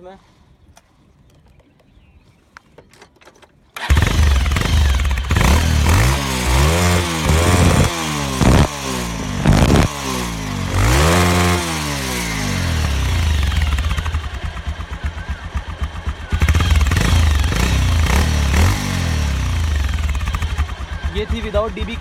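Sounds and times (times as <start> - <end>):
motorcycle engine revving: 3.8 - 22.0.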